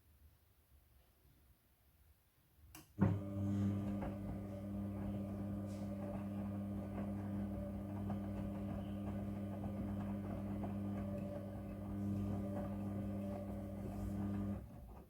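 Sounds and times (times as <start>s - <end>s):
washing machine humming: 3.0s - 15.0s.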